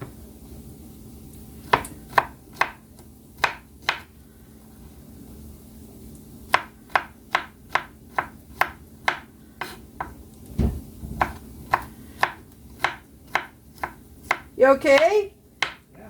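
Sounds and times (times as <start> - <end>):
knife chopping on cutting board: 1.7 - 2.8, 3.4 - 4.1, 6.5 - 15.9
dull low thud: 10.6 - 11.3.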